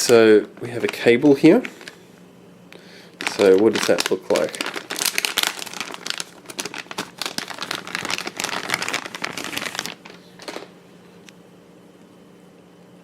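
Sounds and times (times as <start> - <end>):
plastic packaging crinkling: 0.0 - 2.1, 3.1 - 10.8.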